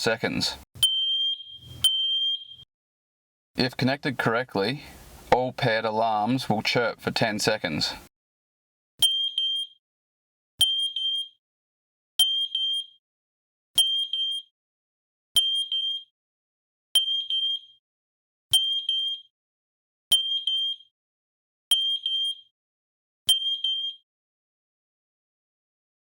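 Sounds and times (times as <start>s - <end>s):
alarm click: 0.8s - 2.6s
smoke alarm beeping: 0.8s - 2.7s, 9.0s - 9.8s, 10.6s - 11.4s, 12.2s - 12.9s, 13.8s - 14.5s, 15.4s - 16.1s, 17.0s - 17.7s, 18.5s - 19.3s, 20.1s - 20.9s, 21.7s - 22.5s, 23.3s - 24.0s.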